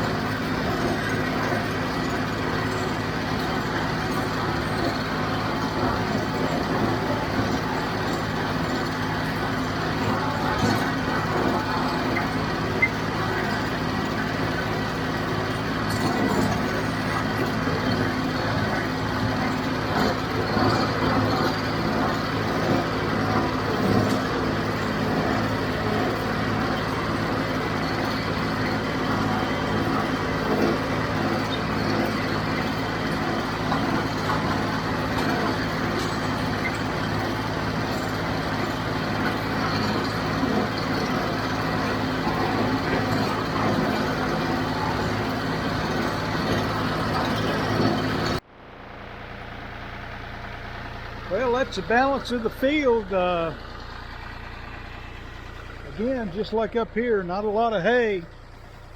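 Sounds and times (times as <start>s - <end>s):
tractor diesel engine running: 0.0s - 58.9s.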